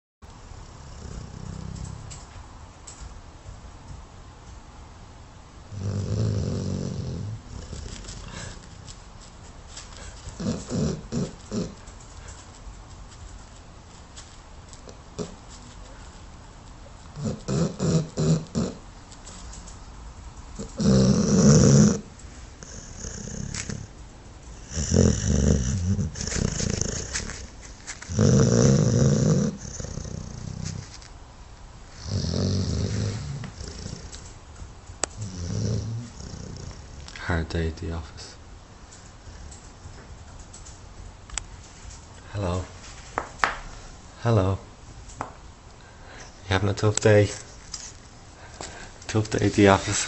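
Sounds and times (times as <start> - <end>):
dog snoring loudly: 0.6 - 2.2, 5.7 - 8.5, 10.4 - 11.8, 17.2 - 18.9, 20.6 - 23.9, 24.6 - 27.5, 28.1 - 30.9, 32.0 - 34.2, 35.2 - 37.1.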